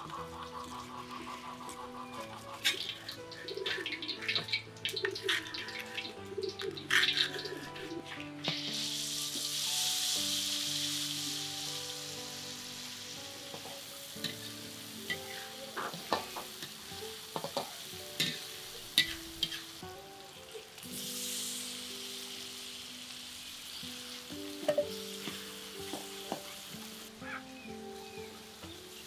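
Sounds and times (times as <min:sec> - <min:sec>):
spatula scraping a pan: 0:00.0 - 0:09.2, 0:17.4 - 0:19.8
food sizzling in hot oil: 0:00.0 - 0:29.0.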